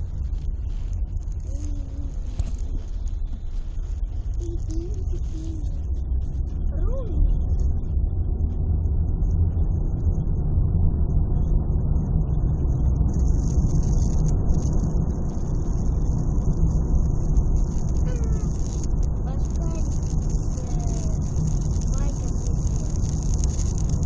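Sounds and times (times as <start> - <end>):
car cabin rumble: 0.0 - 24.0
speaker hissing rustle: 13.1 - 24.0.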